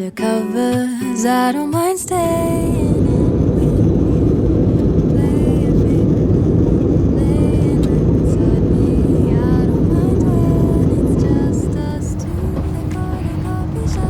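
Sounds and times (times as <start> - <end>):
background pop music: 0.0 - 3.2, 7.2 - 14.0
loud low rumble: 2.1 - 14.0.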